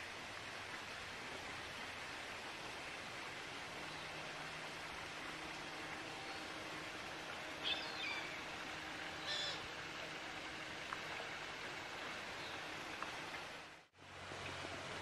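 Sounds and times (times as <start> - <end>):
outdoor background hiss: 0.0 - 15.0
short high bird calls: 9.2 - 9.7.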